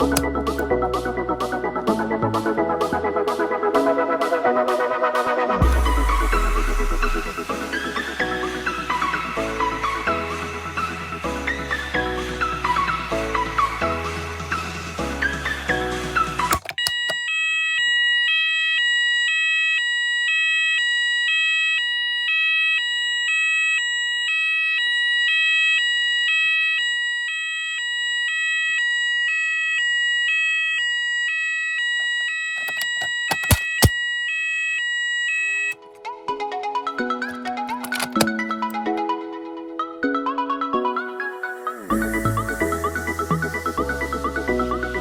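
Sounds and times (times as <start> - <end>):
sharp clicks: 16.5 - 17.2, 32.6 - 34.0, 37.7 - 38.3
electronic fire alarm two-tone: 16.5 - 35.8.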